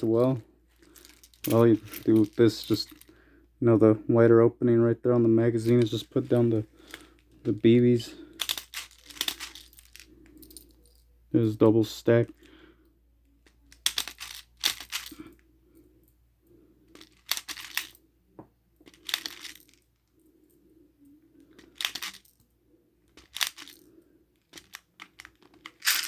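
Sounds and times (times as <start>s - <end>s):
plastic pellets rattling into magazine: 0.2s - 3.1s, 8.4s - 10.1s, 13.5s - 15.3s, 17.0s - 17.9s, 21.6s - 22.3s, 23.2s - 23.8s, 24.5s - 26.0s.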